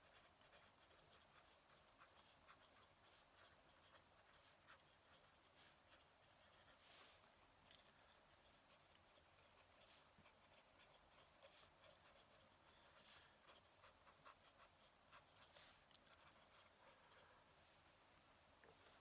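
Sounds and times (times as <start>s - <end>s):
pen nib scratching on paper: 0.0s - 17.3s.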